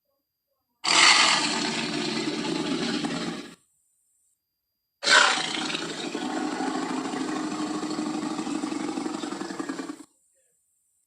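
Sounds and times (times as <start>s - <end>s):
dinosaur roar: 0.8s - 3.6s, 5.0s - 10.1s.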